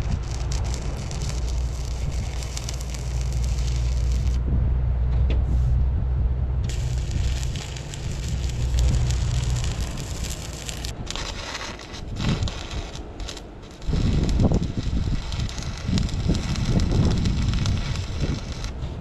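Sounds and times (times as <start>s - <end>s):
crackling noise: 0.0s - 4.5s, 6.5s - 19.0s
diesel engine humming: 0.0s - 11.3s.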